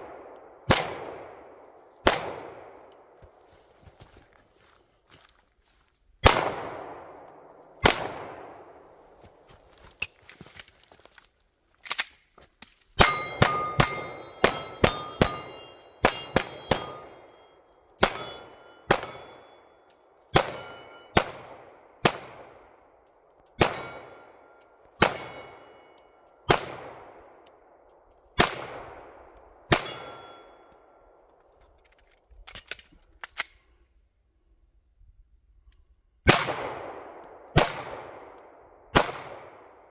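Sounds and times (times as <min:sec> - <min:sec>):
pistol shots: 0:00.0 - 0:03.2, 0:06.2 - 0:08.8, 0:13.0 - 0:17.4, 0:18.0 - 0:19.6, 0:20.3 - 0:22.8, 0:23.6 - 0:25.7, 0:26.4 - 0:27.4, 0:28.4 - 0:30.3, 0:36.3 - 0:39.9
steel target ringing: 0:13.0 - 0:19.8, 0:20.4 - 0:21.3, 0:23.6 - 0:26.0, 0:29.7 - 0:30.7.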